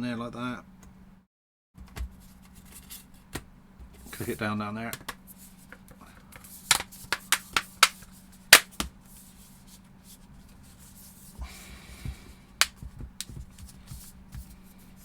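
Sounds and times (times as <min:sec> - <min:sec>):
plastic parts snapping into place: 0:06.7 - 0:08.0.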